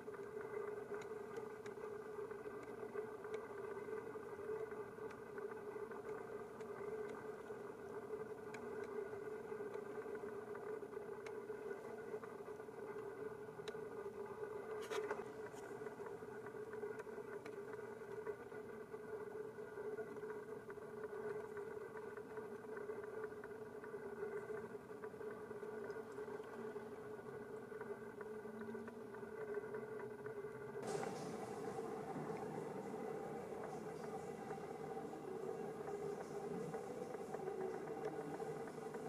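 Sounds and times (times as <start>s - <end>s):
faint mechanical hum: 0.0s - 39.0s
faint clicks: 0.1s - 13.9s, 14.6s - 18.6s.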